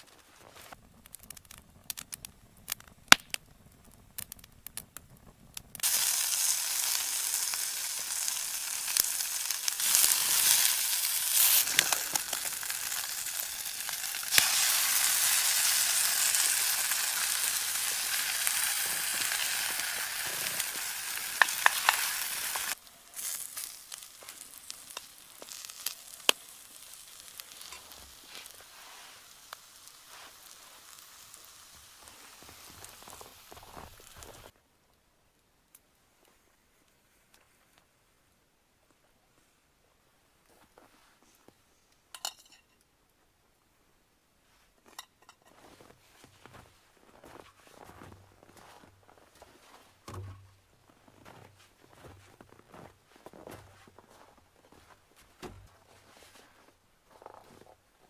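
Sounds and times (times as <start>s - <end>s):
food sizzling in a hot pan: 5.8s - 34.5s.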